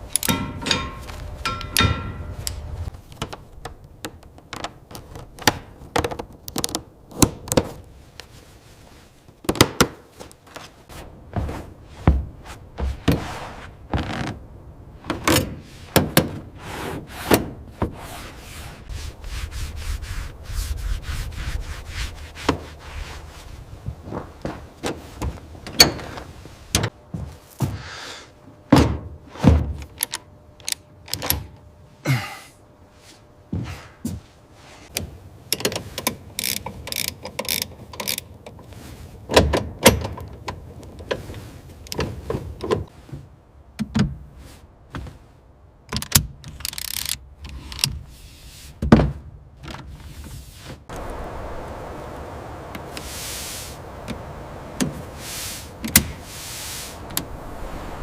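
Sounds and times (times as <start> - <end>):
hand tools and metal parts knocking: 0.0 - 7.6.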